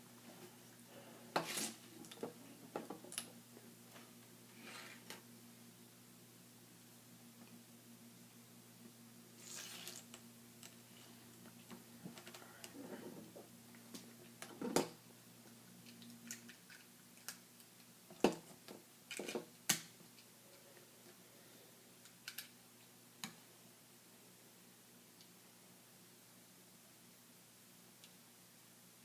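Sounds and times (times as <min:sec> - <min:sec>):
low steady hum: 0:00.0 - 0:29.0
plastic pieces clicking together: 0:22.0 - 0:22.5.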